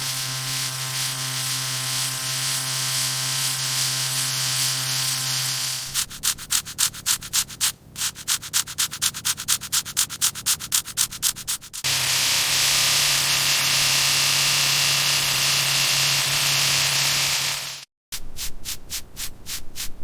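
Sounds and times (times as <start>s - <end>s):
machine hum with hiss: 0.0s - 6.1s, 11.8s - 17.9s
wood sanded by hand: 0.0s - 20.0s.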